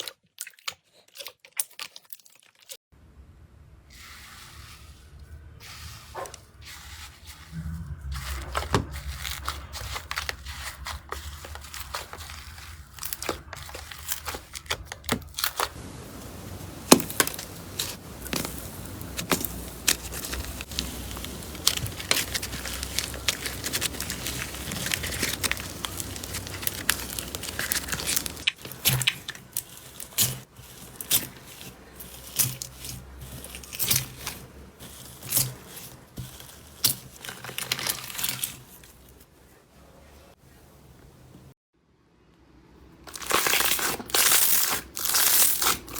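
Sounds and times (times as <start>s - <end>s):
slime crackling and popping: 8.4s - 38.6s, 43.1s - 45.9s.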